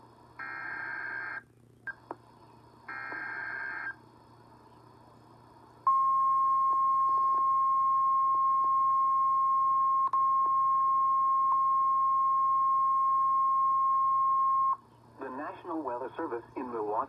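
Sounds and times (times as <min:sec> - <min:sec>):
steady warning alarm beep: 0:05.9 - 0:14.8.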